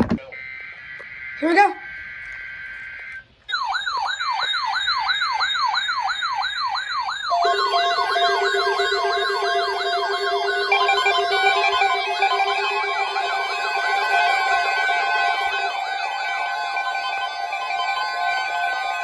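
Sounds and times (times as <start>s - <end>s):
siren-like alert signal: 0.4s - 19.0s
higher alert tone: 7.3s - 15.8s
steady alert tone: 7.3s - 18.0s.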